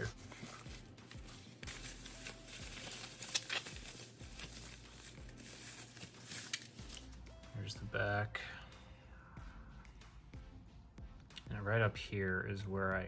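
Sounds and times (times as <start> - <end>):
package rustling: 0.0 - 7.2.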